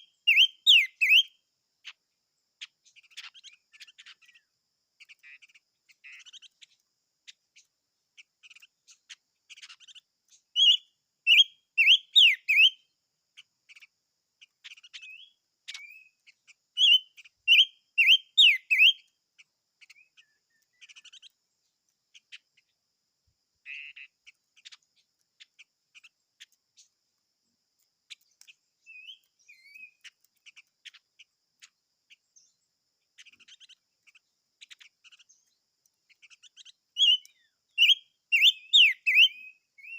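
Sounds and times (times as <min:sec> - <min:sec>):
songbird whistling phrases: 0:00.0 - 0:01.4, 0:09.8 - 0:12.9, 0:14.8 - 0:16.2, 0:16.8 - 0:19.1, 0:23.7 - 0:24.1, 0:28.8 - 0:30.2, 0:36.4 - 0:39.9
soft bird chirps: 0:00.0 - 0:39.9.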